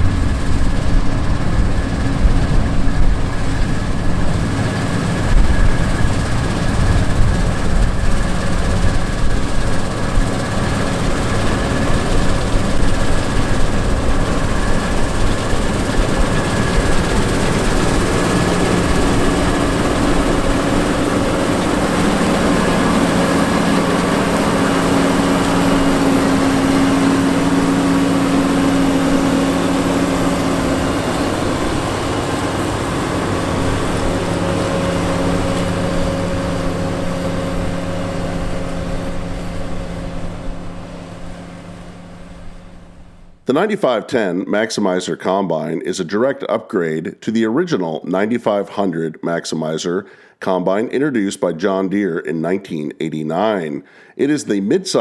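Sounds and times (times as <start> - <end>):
combine harvester engine droning: 0.0 - 43.8.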